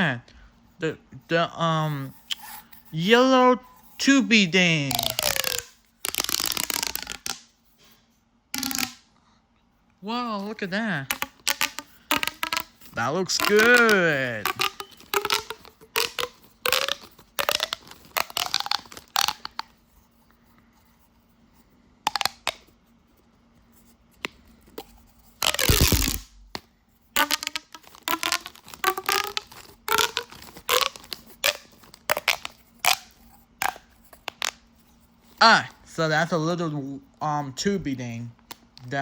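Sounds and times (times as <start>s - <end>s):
pop tube toy clicking: 4.9s - 7.5s, 8.6s - 9.0s, 11.1s - 19.7s, 22.1s - 22.7s, 24.2s - 34.6s.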